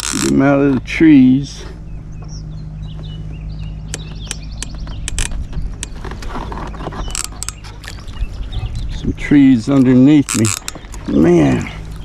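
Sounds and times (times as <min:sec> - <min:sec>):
fishing reel drag clicking: 0:00.0 - 0:00.4
low steady hum: 0:00.0 - 0:12.0.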